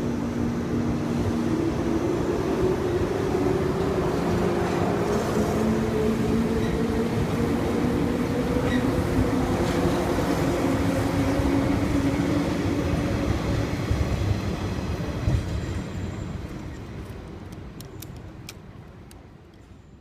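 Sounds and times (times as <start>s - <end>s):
electric train rumbling: 0.0s - 19.8s
sharp clicks: 17.0s - 19.3s.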